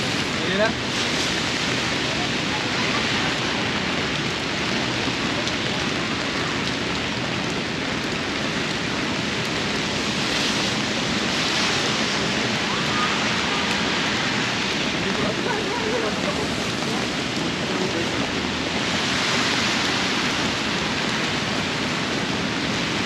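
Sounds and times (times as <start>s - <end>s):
heavy rain: 0.0s - 23.0s.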